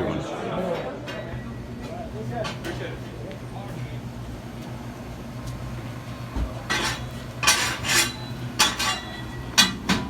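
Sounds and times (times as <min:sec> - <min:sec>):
steady low hum: 0:00.0 - 0:10.0
dishes and utensils clattering: 0:06.7 - 0:10.0.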